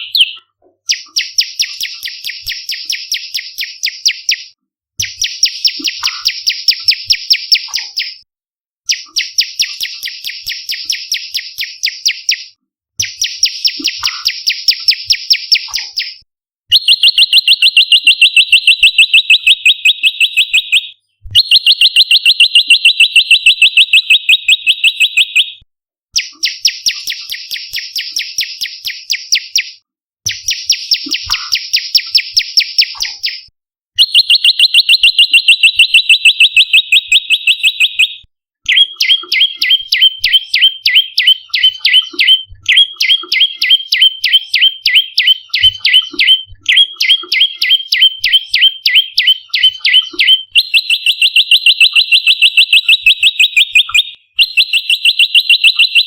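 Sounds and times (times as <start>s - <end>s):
bird calling in fast trills: 0.0s - 8.2s.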